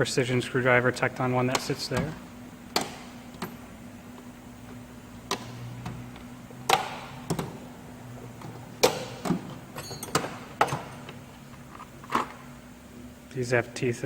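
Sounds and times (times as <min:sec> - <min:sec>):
steady low hum: 0:00.0 - 0:14.0
tools clicking and knocking: 0:08.4 - 0:11.2.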